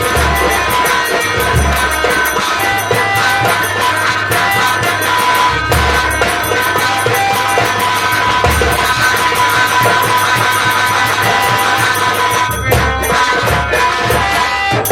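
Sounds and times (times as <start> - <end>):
fast drumbeat: 0.0 - 14.9
held melody notes: 0.0 - 14.9.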